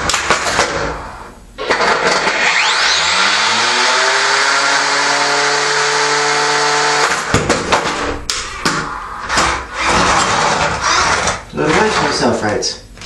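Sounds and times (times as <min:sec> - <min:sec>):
electric motors whining: 0:00.8 - 0:07.3, 0:08.6 - 0:12.2.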